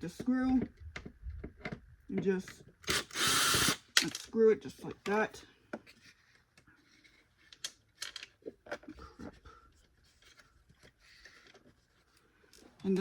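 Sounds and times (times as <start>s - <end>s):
plastic parts clicking and scraping: 3.9s - 4.4s, 5.8s - 9.4s.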